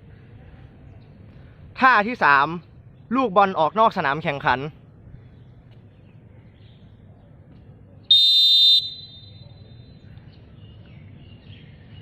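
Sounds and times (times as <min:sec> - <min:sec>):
referee's whistle blast: 0:08.1 - 0:09.4.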